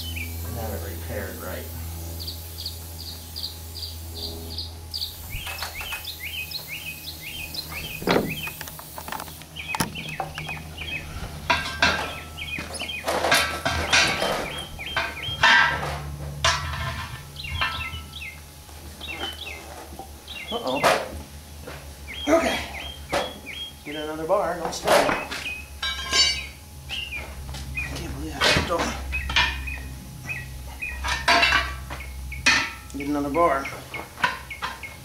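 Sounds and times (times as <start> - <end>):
small birds chirping: 0.0 - 15.6, 17.1 - 21.2, 22.0 - 35.0
low hum: 0.0 - 24.3
metallic clanks and scrapes: 11.1 - 18.1, 24.8 - 26.6, 30.7 - 32.9.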